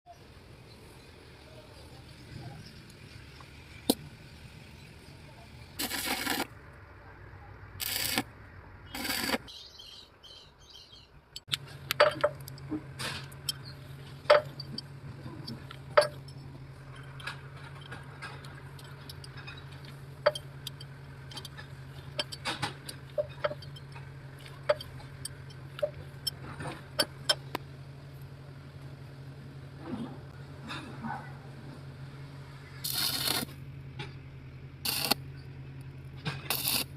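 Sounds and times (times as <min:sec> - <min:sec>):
steady low hum: 0:10.5 - 0:36.9.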